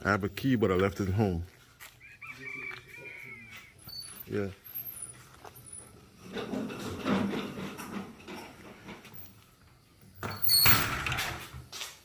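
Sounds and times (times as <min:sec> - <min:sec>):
door opening with scraping rush: 0:04.8 - 0:09.4, 0:10.2 - 0:11.7.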